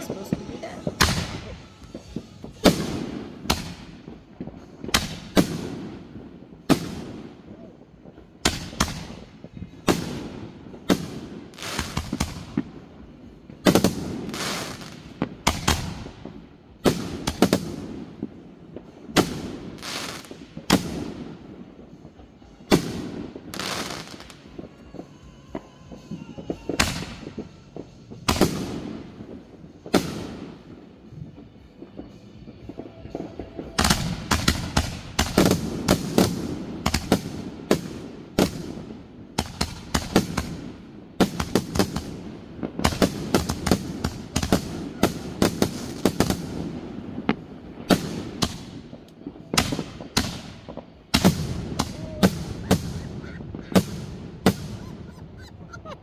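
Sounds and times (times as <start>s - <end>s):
firework bangs with rumble: 22.7s - 55.4s.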